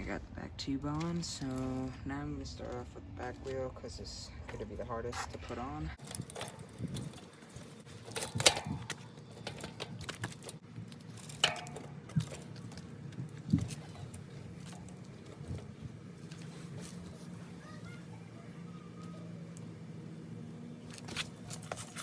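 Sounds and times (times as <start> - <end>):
metal clicks and knocks: 6.0 - 15.7.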